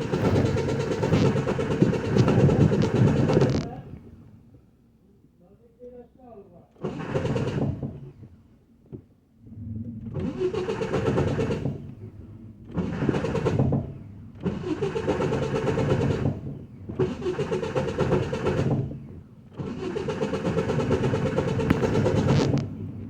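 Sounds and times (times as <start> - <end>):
truck starter cranking engine: 0.0 - 3.8, 10.2 - 11.9, 12.8 - 18.9, 19.6 - 22.9.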